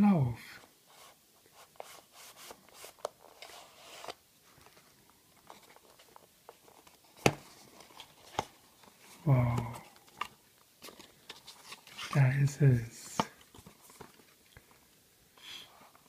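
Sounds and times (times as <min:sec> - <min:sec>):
packaging rubbing and scraping: 0:01.0 - 0:04.2.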